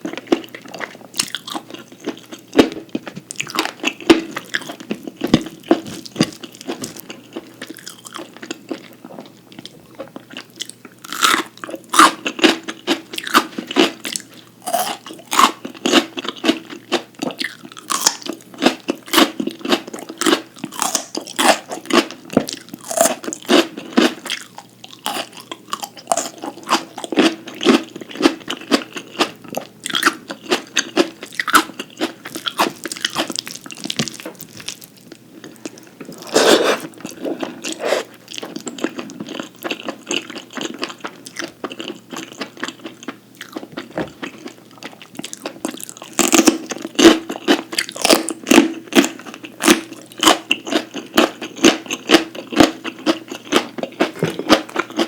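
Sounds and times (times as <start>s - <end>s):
wet chewing: 0.0s - 55.0s
crisp crunching bites: 3.4s - 8.2s, 29.9s - 40.2s.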